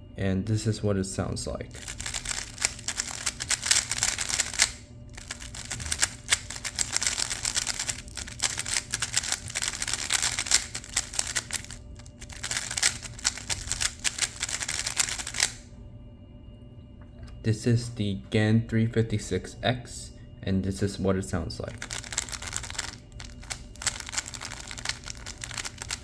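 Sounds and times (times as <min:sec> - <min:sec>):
puzzle cube plastic clicks: 0:01.8 - 0:15.6, 0:21.8 - 0:26.0.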